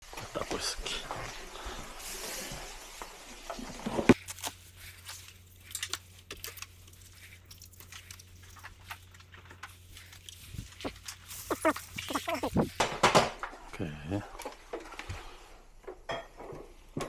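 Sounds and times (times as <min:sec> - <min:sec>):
low steady hum: 0:04.1 - 0:14.2.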